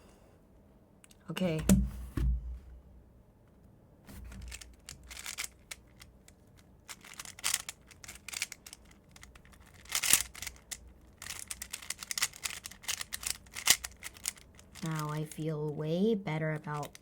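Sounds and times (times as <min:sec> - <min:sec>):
puzzle cube clattering: 0:04.2 - 0:15.5, 0:16.6 - 0:17.0.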